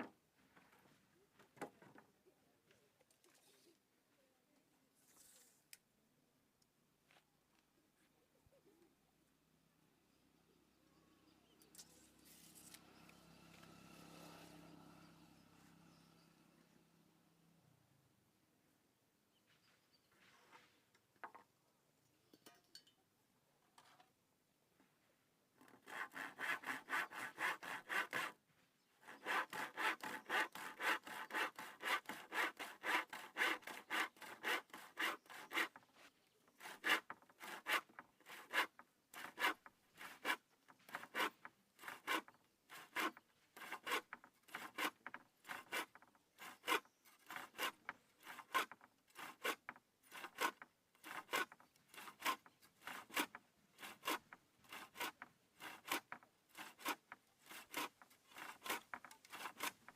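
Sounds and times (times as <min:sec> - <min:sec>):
hand saw cutting wood: 0:25.6 - 0:28.4, 0:29.0 - 0:59.9.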